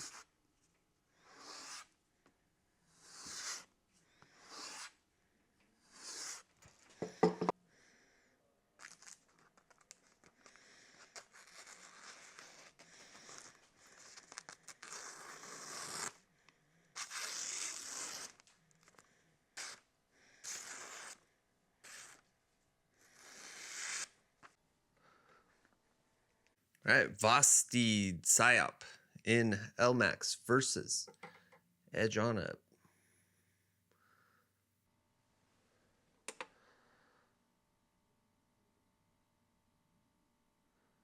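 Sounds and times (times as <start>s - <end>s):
knife slicing paper: 3.0s - 3.7s, 11.2s - 16.2s, 17.0s - 18.4s, 20.4s - 21.2s
sharp knock: 7.0s - 7.5s.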